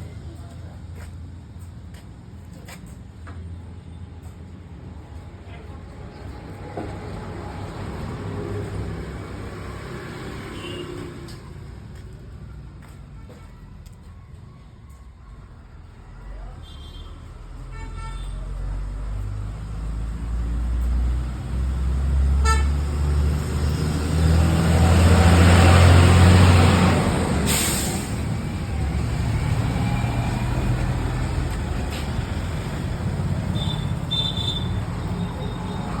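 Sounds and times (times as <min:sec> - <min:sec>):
vehicle passing by: 0:06.9 - 0:11.4, 0:18.5 - 0:34.1.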